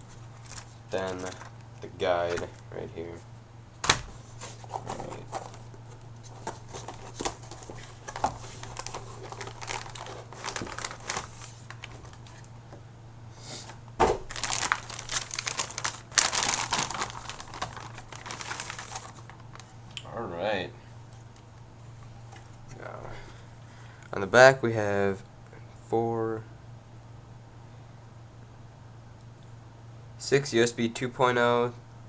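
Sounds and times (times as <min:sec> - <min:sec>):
plastic packaging crinkling: 0:00.1 - 0:01.6, 0:03.8 - 0:12.6, 0:14.0 - 0:20.0
packaging knocks and rustles: 0:03.8 - 0:12.5, 0:13.7 - 0:19.8.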